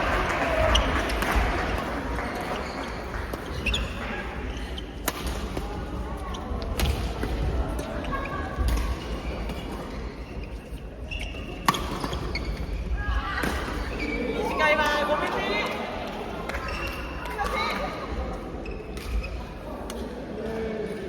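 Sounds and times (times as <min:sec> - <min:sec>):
murmur of voices: 0:12.9 - 0:21.0.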